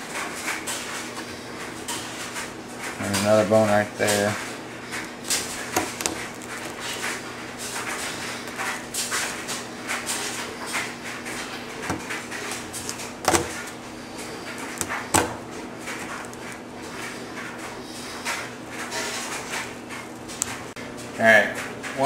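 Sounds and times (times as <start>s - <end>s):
knife cutting and scraping: 4.9s - 7.2s.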